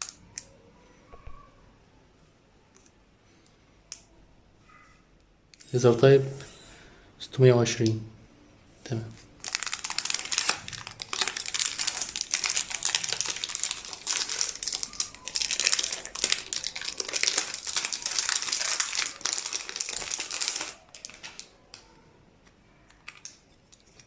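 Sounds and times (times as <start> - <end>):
packaging crinkling: 9.4 - 21.8.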